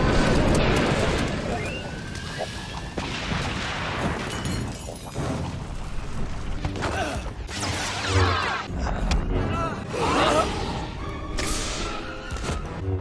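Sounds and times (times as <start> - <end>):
booms and crashes: 2.8 - 6.6.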